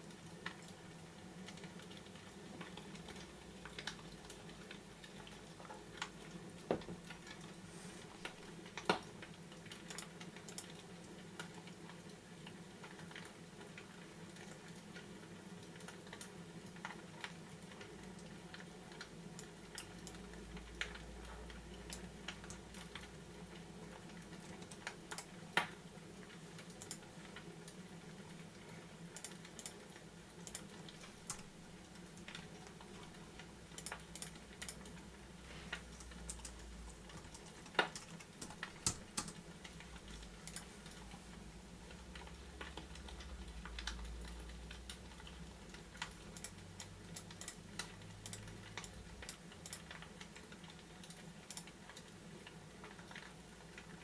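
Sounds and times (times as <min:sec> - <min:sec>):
low steady hum: 0:25.8 - 0:51.2
fireplace crackling: 0:29.5 - 0:46.2.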